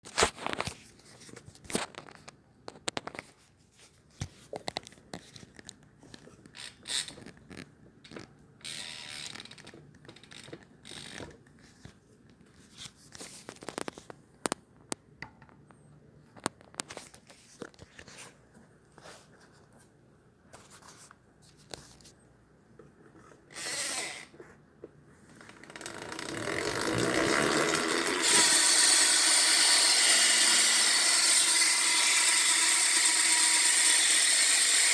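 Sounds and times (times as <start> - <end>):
bike hub ratcheting whir: 8.6 - 11.3, 23.6 - 24.3, 25.4 - 34.9.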